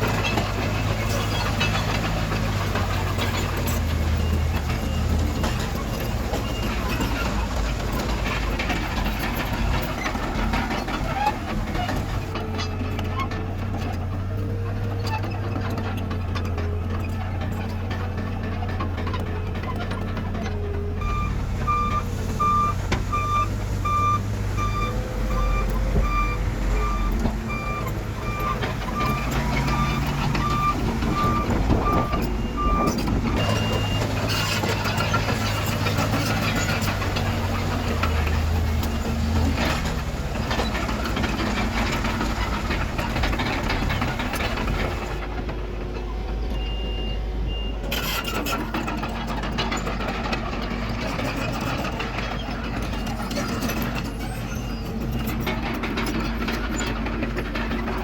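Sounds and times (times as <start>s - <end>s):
heavy diesel machinery running: 0.0s - 58.0s
reversing alarm beeping: 21.0s - 35.1s.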